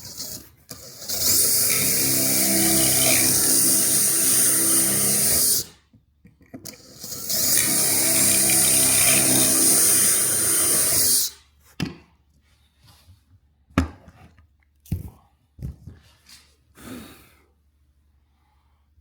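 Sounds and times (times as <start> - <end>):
power drill drilling into wood: 1.0 - 5.7, 6.8 - 11.3.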